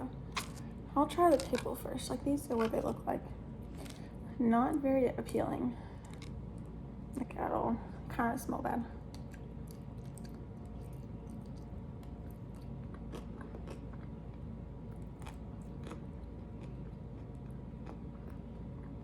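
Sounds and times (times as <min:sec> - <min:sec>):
steady low hum: 0:00.0 - 0:19.0
person chewing crunchy food: 0:00.3 - 0:00.7, 0:03.6 - 0:04.1, 0:06.0 - 0:06.4, 0:09.1 - 0:19.0.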